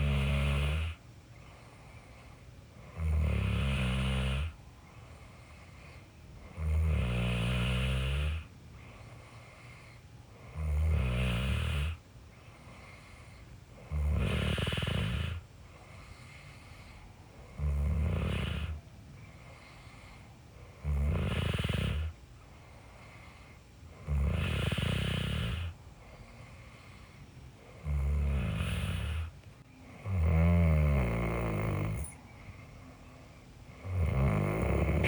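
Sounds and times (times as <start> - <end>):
person snoring: 0.0 - 1.0, 2.8 - 4.6, 6.4 - 8.5, 9.8 - 12.0, 13.8 - 15.4, 16.1 - 18.8, 20.8 - 22.1, 24.0 - 25.7, 27.7 - 29.3, 30.0 - 32.2, 33.8 - 35.0
faint steady background noise: 0.0 - 35.0.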